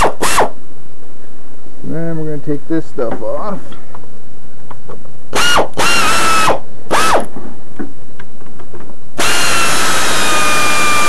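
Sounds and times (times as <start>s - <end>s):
cordless drill motor whine: 0.0s - 0.5s, 5.3s - 7.3s, 9.2s - 11.0s.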